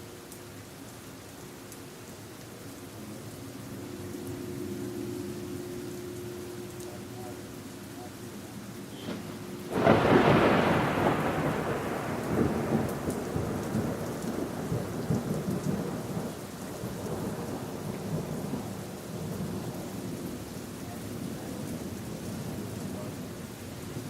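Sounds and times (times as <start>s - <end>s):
steady rain: 0.0s - 24.0s
thunder rumbling: 9.0s - 19.8s.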